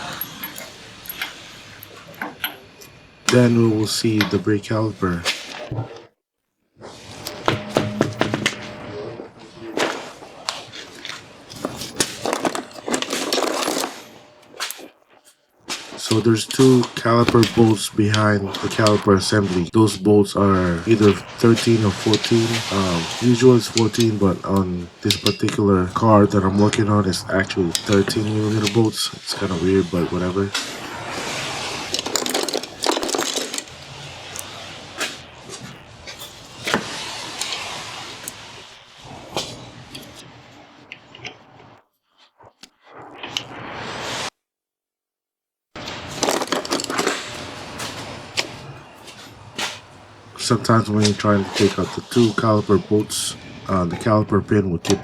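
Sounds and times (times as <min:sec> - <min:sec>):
tools clanking on metal parts: 0:00.0 - 0:04.5, 0:07.2 - 0:19.7, 0:20.6 - 0:35.2, 0:45.8 - 0:54.2
scraping and handling noise: 0:00.0 - 0:06.1, 0:06.8 - 0:43.6, 0:45.8 - 0:55.0.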